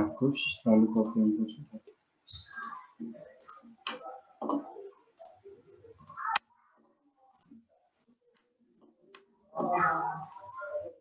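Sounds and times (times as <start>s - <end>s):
computer mouse and keyboard clicking: 2.3s - 6.4s, 7.3s - 8.5s, 9.1s - 10.6s.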